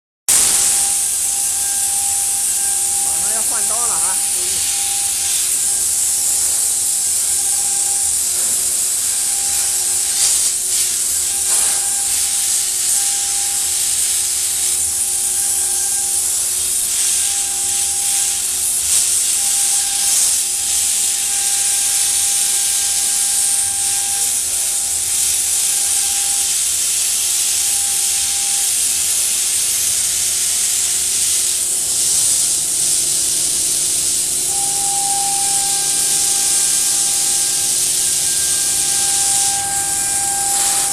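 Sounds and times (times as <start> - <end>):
faint tone: 0.3 - 8.6, 34.2 - 40.9
milling machine spindle hiss: 0.3 - 40.9.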